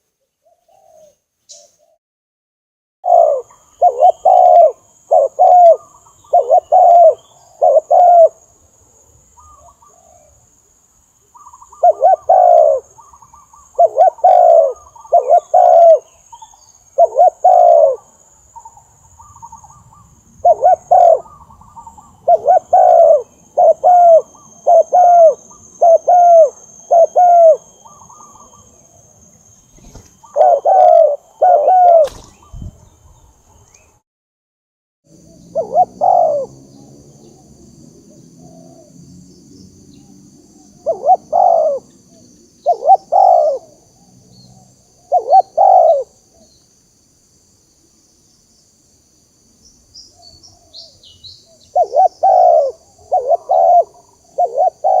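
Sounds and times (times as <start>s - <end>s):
dove cooing: 0.4s - 2.0s, 3.0s - 8.4s, 9.4s - 10.4s, 11.4s - 18.2s, 19.2s - 28.8s, 29.7s - 32.7s, 35.2s - 37.6s, 38.2s - 39.0s, 40.8s - 46.5s, 50.2s - 55.0s.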